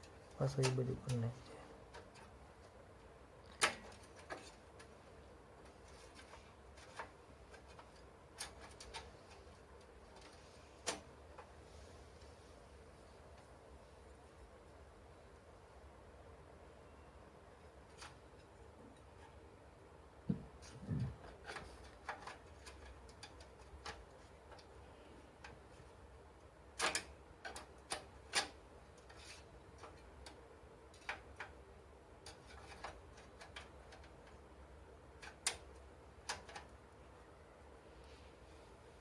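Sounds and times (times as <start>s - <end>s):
computer parts clicking and knocking: 3.4s - 5.0s, 5.6s - 11.5s, 20.2s - 24.8s, 26.7s - 31.6s, 32.2s - 36.8s.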